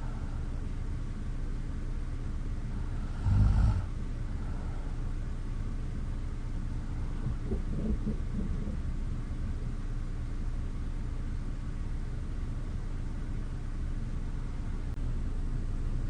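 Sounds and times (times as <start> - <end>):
breathy breathing sound: 0.0 - 0.6, 2.7 - 5.2
low background rumble: 0.0 - 16.0
person snoring: 2.7 - 5.0, 6.9 - 8.9.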